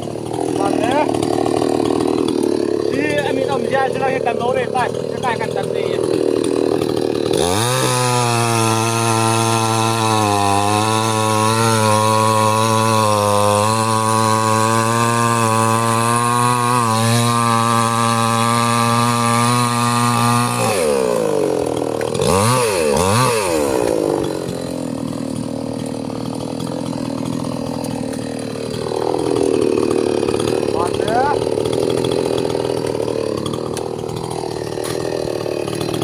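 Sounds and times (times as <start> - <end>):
chainsaw engine revving: 0.0 - 36.0.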